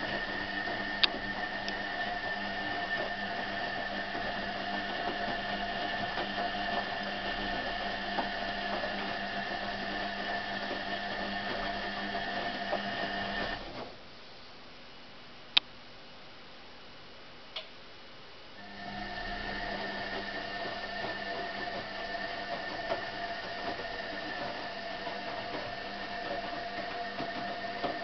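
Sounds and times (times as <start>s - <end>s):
washing machine motor whine: 0.0s - 13.9s, 18.6s - 28.0s.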